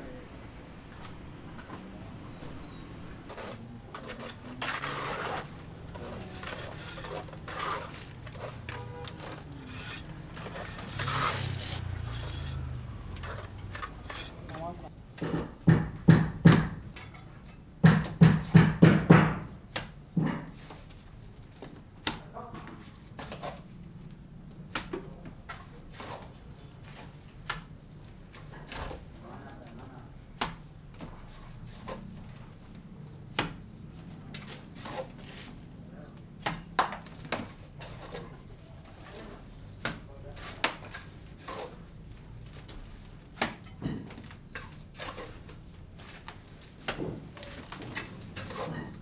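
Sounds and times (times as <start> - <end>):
sharp knocks and light clatter: 3.3 - 49.0
sharp knocks: 15.2 - 16.9, 17.8 - 20.5.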